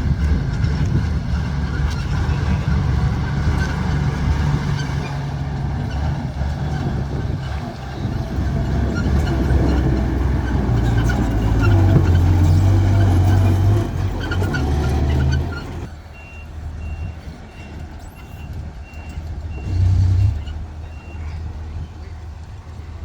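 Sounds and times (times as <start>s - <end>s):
diesel machinery working: 0.0s - 23.0s
reversing alarm beeping: 15.1s - 20.3s.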